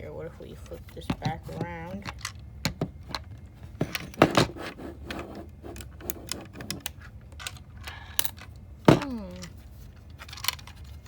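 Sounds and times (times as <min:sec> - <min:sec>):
plastic pieces clicking and clattering: 0:06.3 - 0:11.0.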